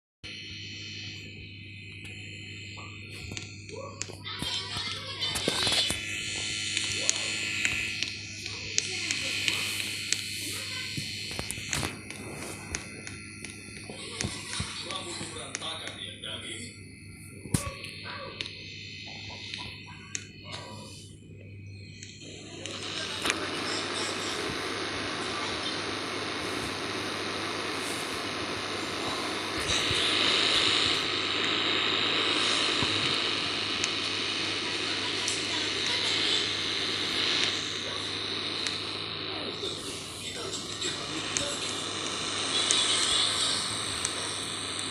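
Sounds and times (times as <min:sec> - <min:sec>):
air conditioner hiss and buzz: 0:00.3 - 0:44.9
low electrical hum: 0:00.3 - 0:44.9.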